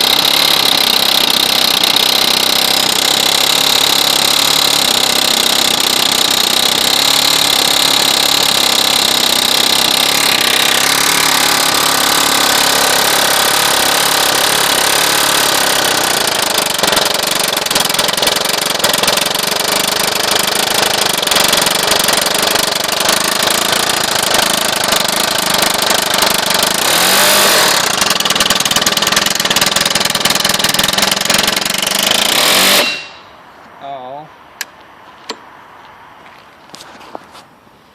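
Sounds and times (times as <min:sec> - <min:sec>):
engine knocking: 0:00.0 - 0:32.8
mower engine running: 0:00.0 - 0:33.4.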